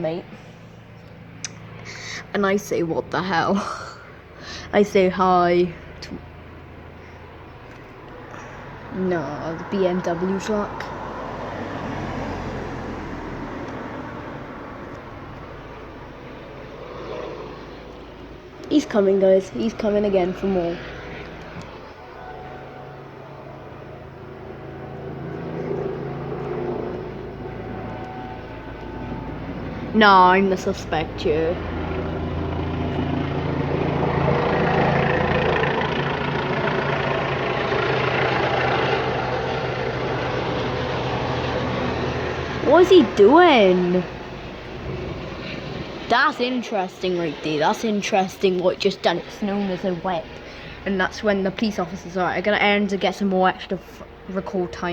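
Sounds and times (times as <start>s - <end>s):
broad rushing noise: 0.0s - 54.9s
helicopter hovering drone: 0.0s - 54.9s
passing vehicle engine hum: 0.0s - 54.9s
street vehicle noise: 0.0s - 54.9s.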